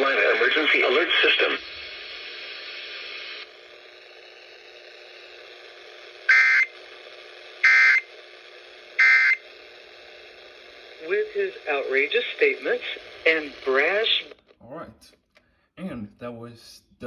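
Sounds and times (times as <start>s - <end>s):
faint radio hiss: 0.0s - 4.1s, 9.0s - 15.1s
screeching data tones: 6.3s - 6.8s, 7.6s - 8.1s, 9.0s - 9.5s.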